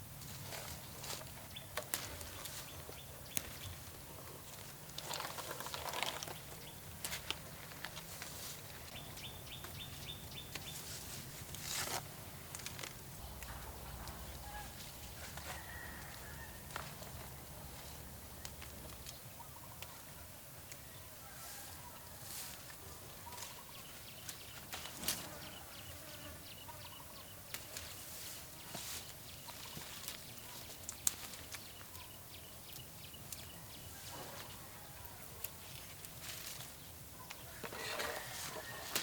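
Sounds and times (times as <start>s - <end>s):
sharp clicks and rustles: 11.5s - 17.3s
poultry calling: 13.6s - 16.8s.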